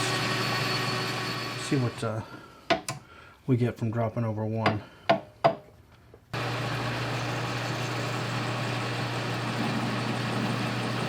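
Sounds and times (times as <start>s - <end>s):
metal lathe motor hum: 0.0s - 2.0s, 6.4s - 11.0s.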